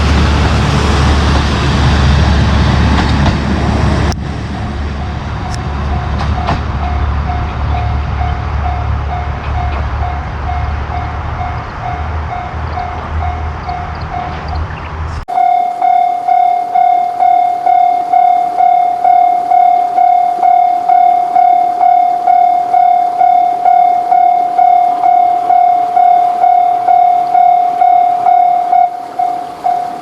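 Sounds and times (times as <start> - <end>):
level crossing warning bell: 4.6 - 14.4, 15.3 - 30.0.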